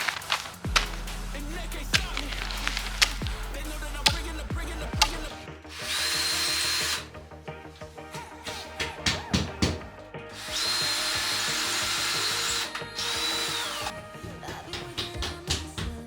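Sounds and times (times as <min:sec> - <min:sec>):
power drill whining: 0:00.0 - 0:07.1, 0:10.3 - 0:13.9.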